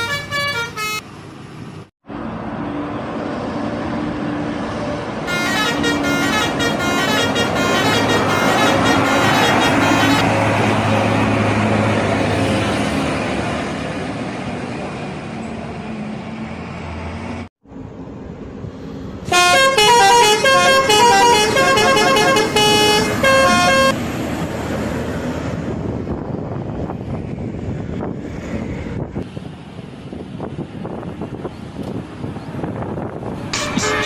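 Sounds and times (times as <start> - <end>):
bus air horns playing a tune: 0.0 - 1.0, 5.2 - 10.6, 19.3 - 24.0, 33.6 - 34.0
bus road and engine noise: 0.0 - 34.0.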